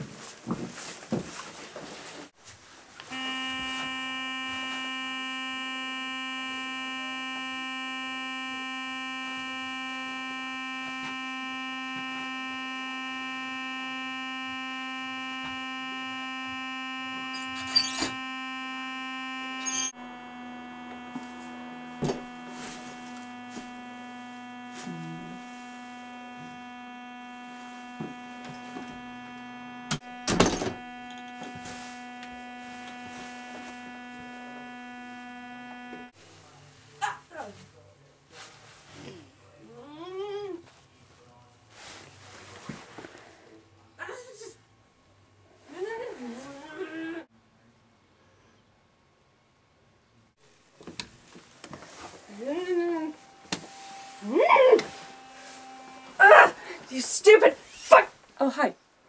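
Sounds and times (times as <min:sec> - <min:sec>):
electric toothbrush buzzing: 0:03.1 - 0:36.1, 0:51.9 - 0:57.9.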